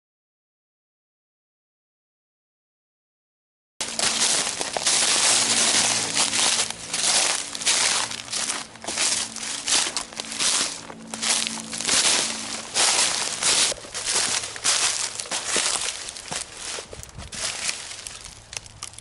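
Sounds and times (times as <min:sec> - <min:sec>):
footsteps crunching on ground litter: 0:03.8 - 0:19.0.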